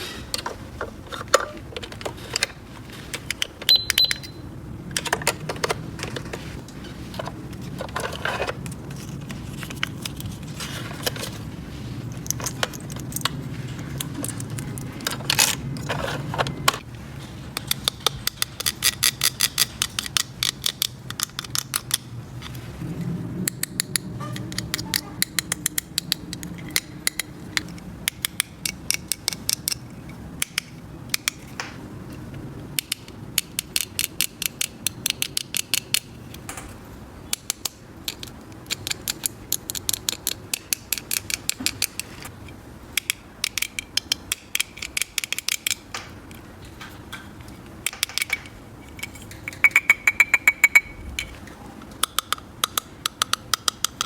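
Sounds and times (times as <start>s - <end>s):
plastic toy pieces clicking: 17.6s - 22.1s, 23.4s - 31.4s, 32.8s - 36.1s, 37.3s - 42.1s, 42.9s - 46.4s, 47.8s - 51.3s, 51.9s - 54.0s.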